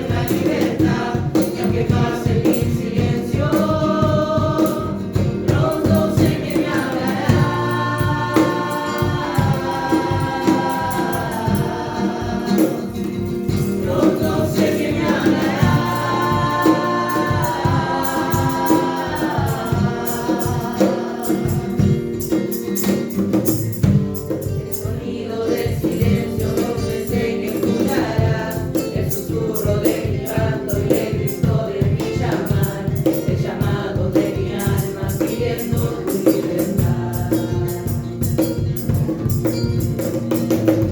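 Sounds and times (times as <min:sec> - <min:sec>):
young voices singing together: 0:00.0 - 0:22.5, 0:24.4 - 0:39.1
instrumental backing with beat: 0:25.9 - 0:40.9.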